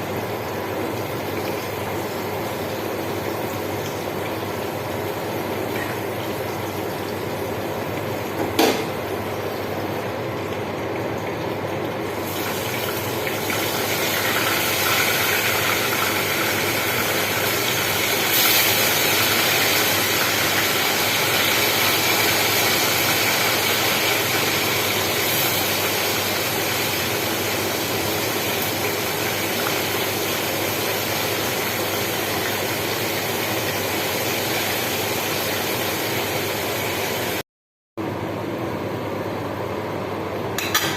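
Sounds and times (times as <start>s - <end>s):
food sizzling in hot oil: 12.0s - 37.4s.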